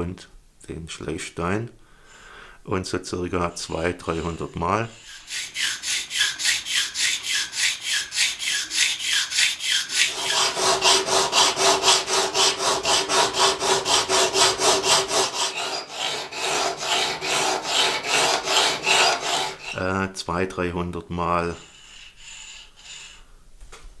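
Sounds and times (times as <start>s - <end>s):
ceramic rod rasping on steel blade: 3.7s - 19.8s, 21.6s - 23.2s.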